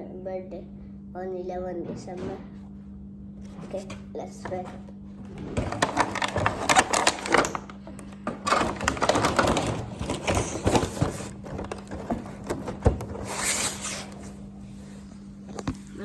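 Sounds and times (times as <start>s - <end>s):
toy robot motor and gears rattling: 8.4s - 14.1s.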